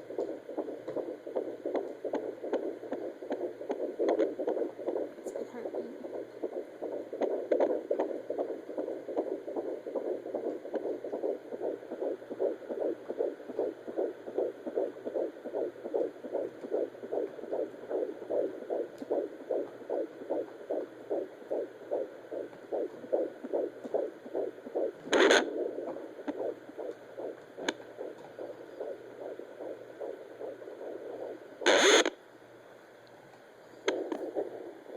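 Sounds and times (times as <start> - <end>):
fetal heartbeat through doppler speaker: 0.0 - 32.2, 33.8 - 34.9
probe scraping bursts: 23.2 - 32.1.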